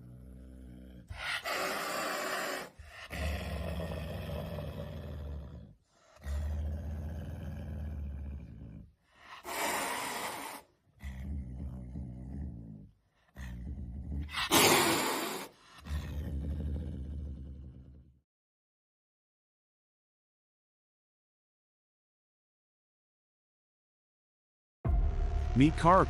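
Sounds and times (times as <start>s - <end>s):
wild cat hissing and growling: 0.0s - 18.2s.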